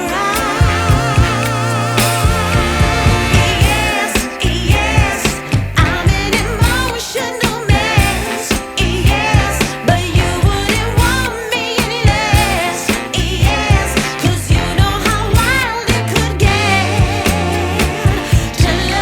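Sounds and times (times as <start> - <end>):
song with vocals over beat: 0.0 - 19.0.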